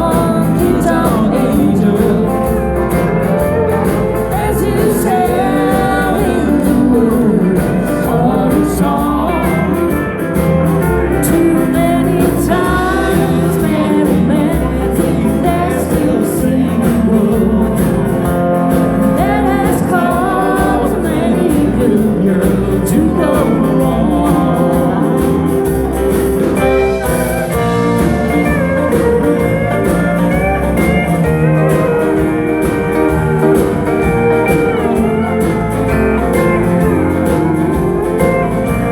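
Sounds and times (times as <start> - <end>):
country-rock band playing: 0.0 - 38.9
man singing: 0.0 - 38.9
electric guitar solo: 25.5 - 38.9.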